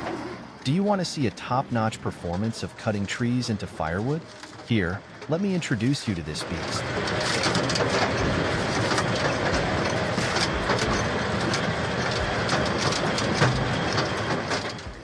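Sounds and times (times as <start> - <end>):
firewood processor saw running: 0.0 - 15.0.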